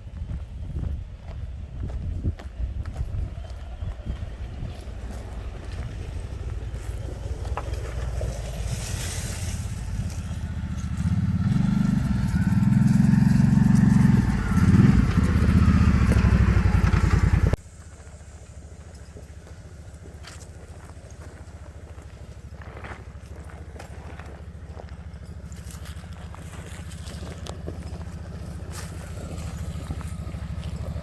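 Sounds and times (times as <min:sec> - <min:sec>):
atv engine running: 0:00.0 - 0:31.0.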